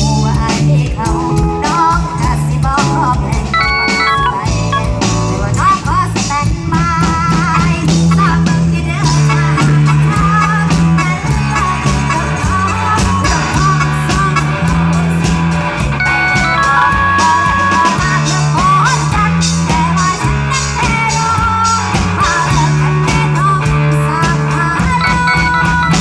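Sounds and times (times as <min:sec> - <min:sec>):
bass line: 0:00.0 - 0:26.0
steady drum beat: 0:00.0 - 0:26.0
person singing wavering melody: 0:03.5 - 0:04.9, 0:24.8 - 0:26.0.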